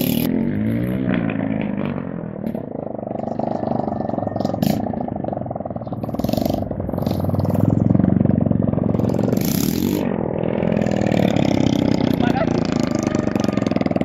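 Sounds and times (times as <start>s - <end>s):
small motorized bike engine revving: 5.9s - 14.0s.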